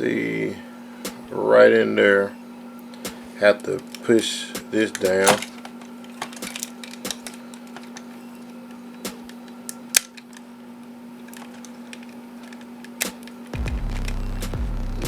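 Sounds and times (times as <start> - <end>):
steady low hum: 0.0 - 15.0
plastic toy parts clicking: 4.8 - 10.5, 11.2 - 13.5.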